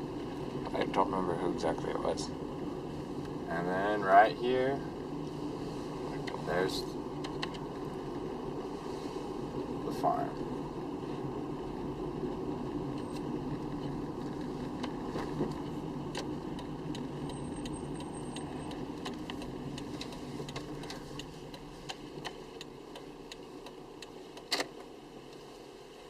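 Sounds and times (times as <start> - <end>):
car road and engine rumble: 0.0 - 26.0.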